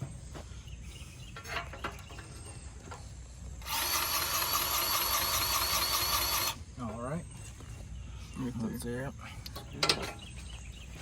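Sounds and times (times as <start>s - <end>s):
power grease gun running: 3.6s - 6.6s.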